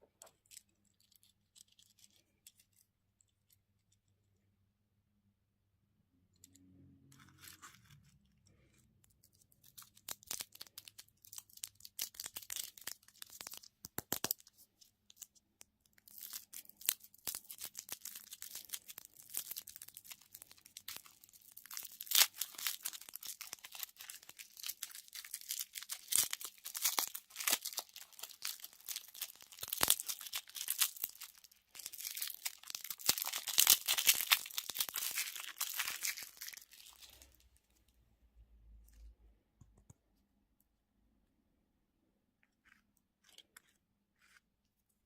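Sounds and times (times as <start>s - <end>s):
plastic wrappers crinkling: 9.2s - 37.4s.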